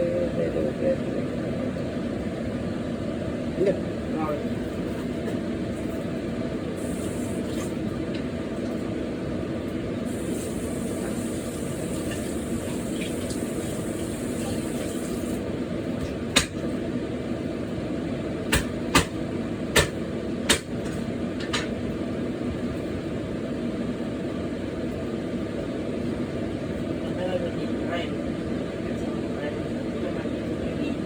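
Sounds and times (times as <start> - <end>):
steady low hum: 0.0 - 31.0
sharp knocks: 18.5 - 19.2, 19.8 - 20.7.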